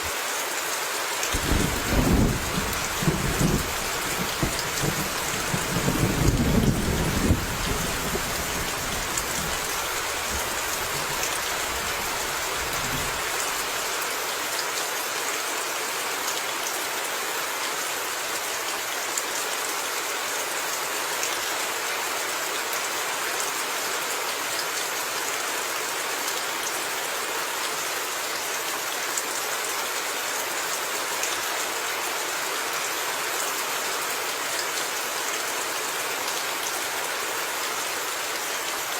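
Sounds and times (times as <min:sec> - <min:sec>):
rain hissing down: 0:00.0 - 0:18.4
low rumble of thunder: 0:01.4 - 0:13.7.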